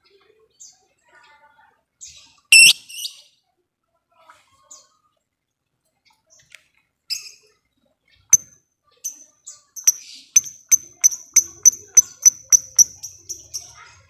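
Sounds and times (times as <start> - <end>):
lovebird chirping: 2.5 - 3.1, 9.8 - 13.8.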